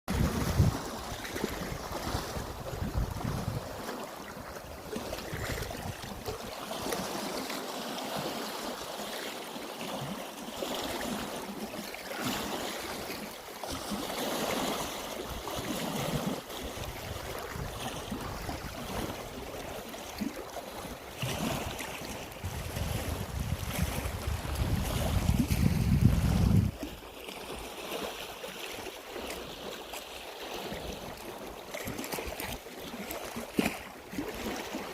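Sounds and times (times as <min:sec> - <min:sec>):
wind rumble on microphone: 0:00.1 - 0:03.9, 0:04.9 - 0:06.5, 0:21.2 - 0:27.0
sea waves washing on shore: 0:00.1 - 0:34.9.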